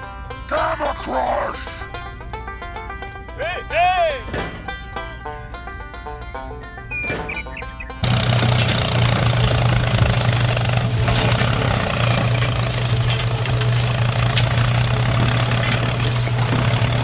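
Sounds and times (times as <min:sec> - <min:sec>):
heavy engine running: 0:04.2 - 0:17.0.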